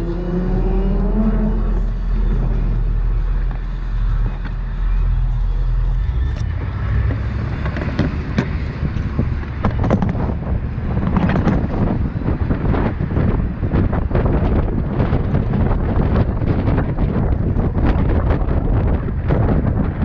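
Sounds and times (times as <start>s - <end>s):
vehicle rumble: 0.0s - 20.0s
wind buffeting microphone: 0.0s - 20.0s.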